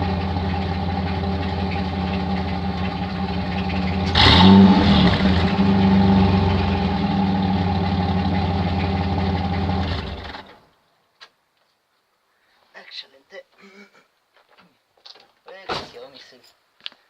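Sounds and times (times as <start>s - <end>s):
engine idling and revving: 0.0s - 10.6s.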